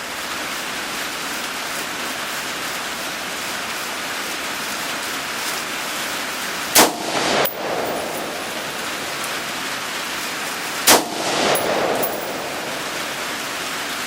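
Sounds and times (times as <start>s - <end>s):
heavy rain hissing: 0.0s - 14.0s
rifle shot with echo: 6.8s - 13.9s.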